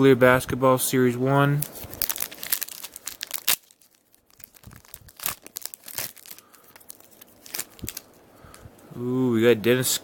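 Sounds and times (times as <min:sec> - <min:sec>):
wrapper tearing and crinkling: 0:01.5 - 0:08.2.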